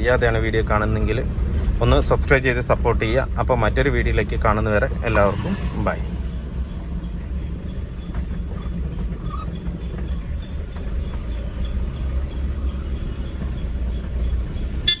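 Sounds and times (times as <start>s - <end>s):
vehicle engine rumbling: 0.0s - 15.0s.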